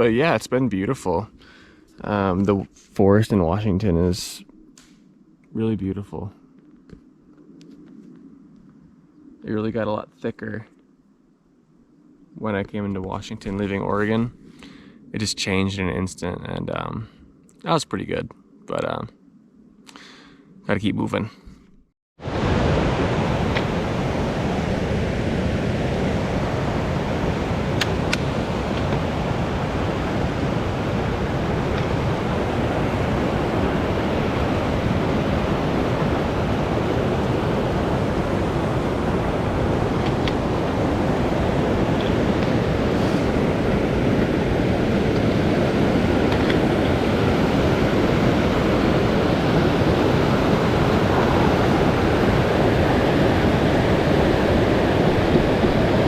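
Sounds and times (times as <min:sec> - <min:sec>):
rushing water: 0:22.2 - 0:56.0.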